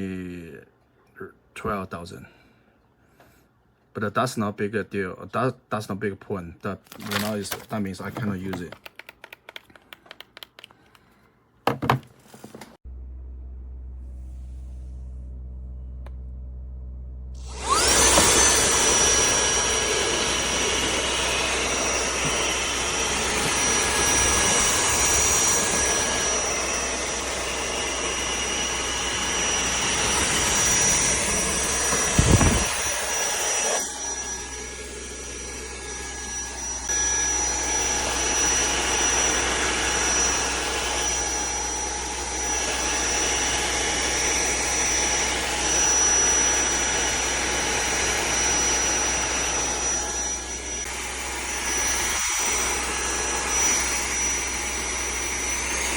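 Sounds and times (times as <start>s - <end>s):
handheld vacuum whining: 6.8s - 11.1s, 17.4s - 55.9s.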